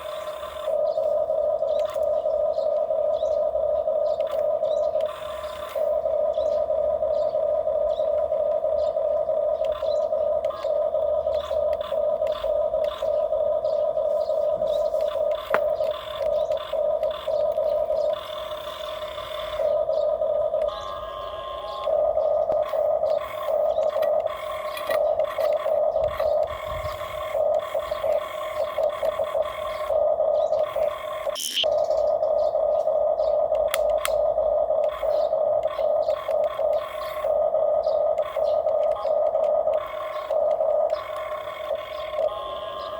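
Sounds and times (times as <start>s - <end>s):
small electric motors whining: 0.0s - 42.9s
light plastic clicks: 33.5s - 34.2s.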